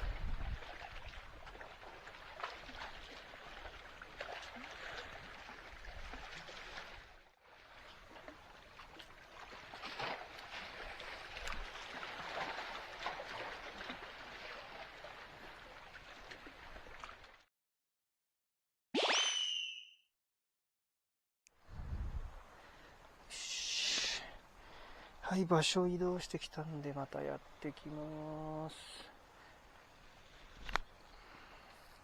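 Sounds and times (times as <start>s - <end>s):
sea water lapping on shore: 0.0s - 17.4s.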